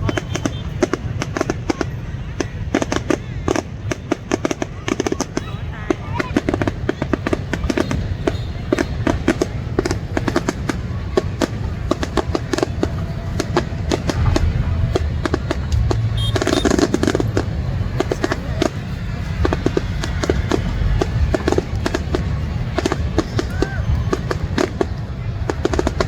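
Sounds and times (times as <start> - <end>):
fireworks bangs and crackling: 0.0 - 26.0
low rumble: 13.0 - 18.2.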